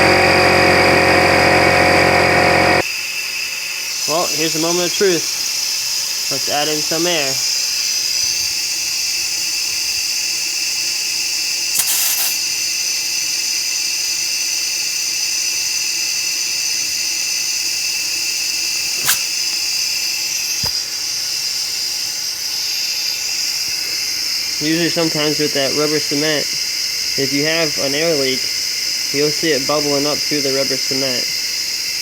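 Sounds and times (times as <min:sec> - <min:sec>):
air compressor whining: 0:00.0 - 0:02.8, 0:11.6 - 0:12.5, 0:16.9 - 0:20.9
air hissing: 0:11.6 - 0:12.8, 0:16.9 - 0:21.0.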